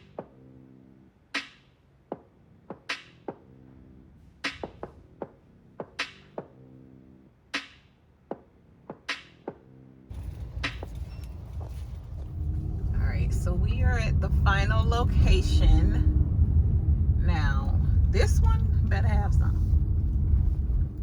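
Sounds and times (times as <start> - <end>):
steady low rumble: 10.1 - 21.0
low synth chords: 10.2 - 21.0.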